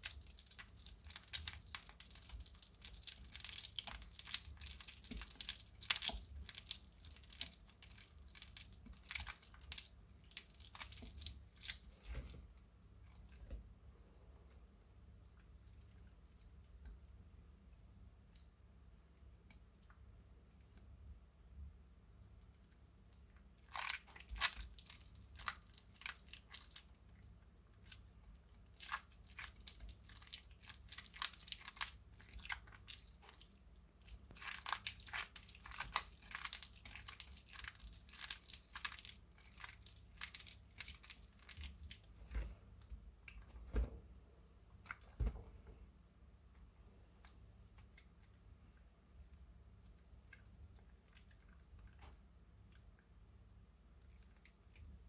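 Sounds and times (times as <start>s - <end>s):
soap plates crunching and crackling: 0.0s - 13.7s, 22.5s - 43.6s, 46.5s - 53.2s, 53.8s - 55.0s.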